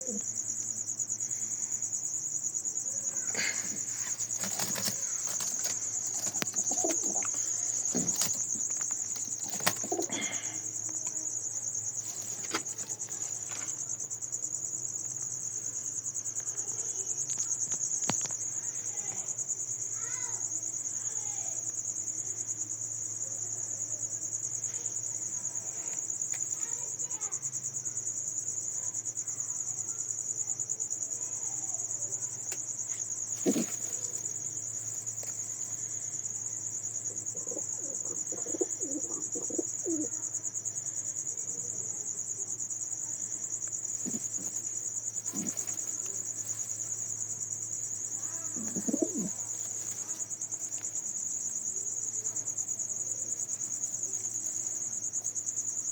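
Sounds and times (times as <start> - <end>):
crickets chirring: 0.0 - 55.9
pigeons cooing: 3.4 - 10.6, 33.4 - 34.2, 37.2 - 40.2, 44.0 - 44.6, 45.2 - 45.9, 48.5 - 49.6.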